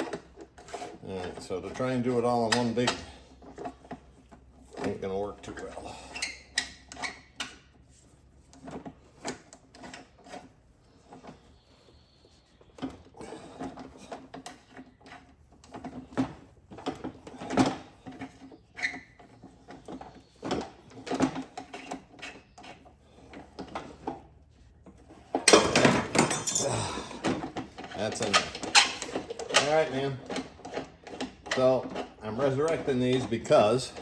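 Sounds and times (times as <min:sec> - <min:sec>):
rivet tool metal clicks and creaks: 0:00.0 - 0:07.8, 0:24.9 - 0:34.0.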